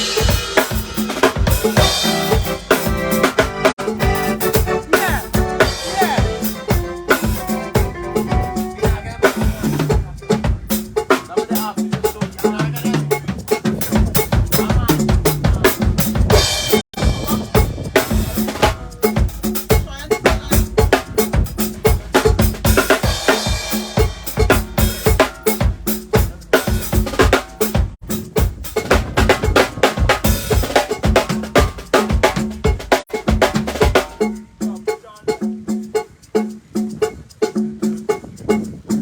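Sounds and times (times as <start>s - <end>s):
cymbal washes: 0.0s - 38.2s
drum kit played fast: 0.0s - 39.0s.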